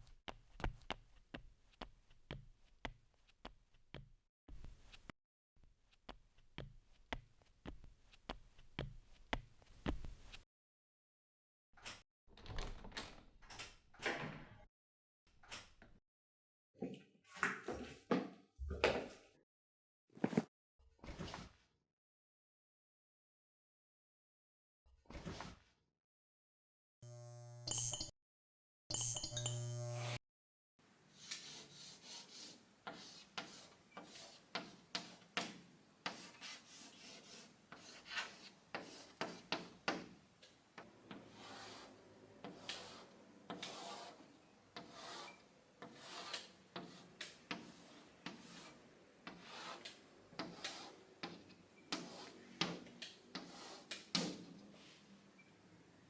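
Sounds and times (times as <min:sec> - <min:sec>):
irregular scraping strokes: 0:41.1 - 0:52.5.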